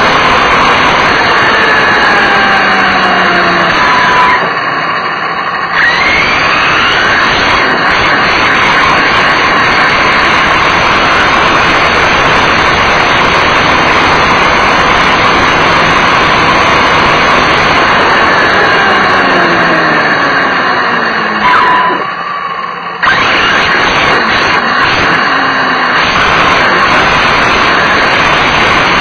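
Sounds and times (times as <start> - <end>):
small nitro engine revving: 0.0 - 29.0
wind rush and rattle: 6.1 - 19.0, 26.0 - 29.0.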